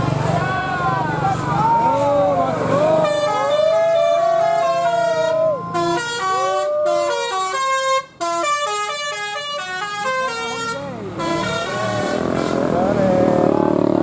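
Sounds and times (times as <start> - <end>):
musical bus horn playing a tune: 2.9 - 12.6.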